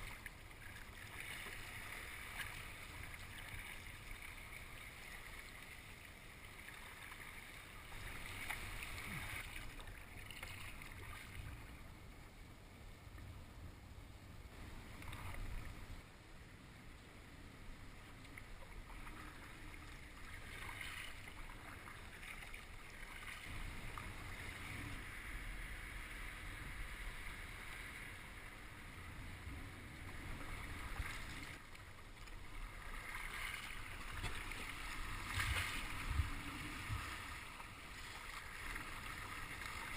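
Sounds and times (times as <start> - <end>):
water splashing around kayak: 0.0 - 12.0, 14.5 - 16.1, 17.4 - 39.9
wind rumble on microphone: 33.5 - 39.9.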